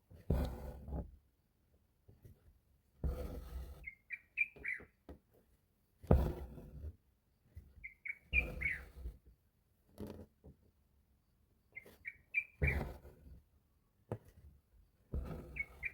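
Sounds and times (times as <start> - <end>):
high bird chirps: 3.8 - 4.9, 7.8 - 8.8, 11.8 - 12.7.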